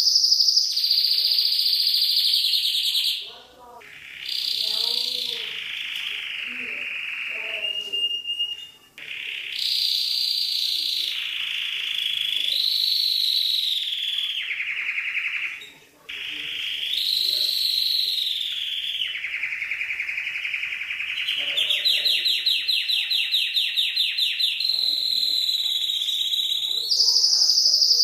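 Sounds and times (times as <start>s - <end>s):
canary singing: 0.0s - 28.0s.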